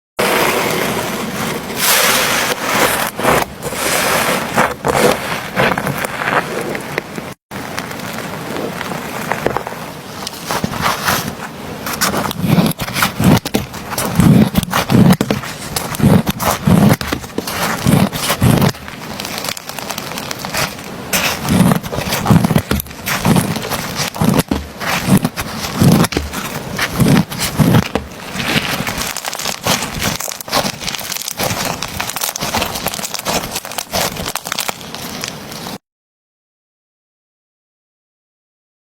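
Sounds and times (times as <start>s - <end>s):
slime squished by hand: 11.9s - 35.8s.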